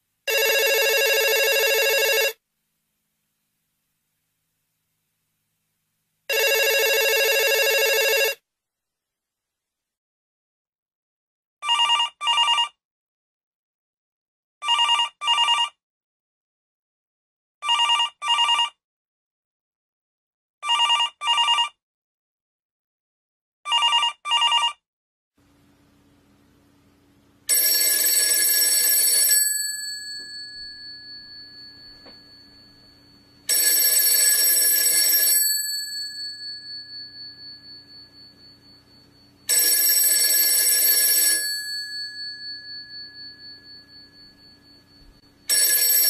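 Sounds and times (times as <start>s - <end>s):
telephone ringing: 0.3s - 2.4s, 6.3s - 8.4s, 11.6s - 12.8s, 14.6s - 15.7s, 17.6s - 18.7s, 20.6s - 21.7s, 23.7s - 24.8s, 27.5s - 46.0s.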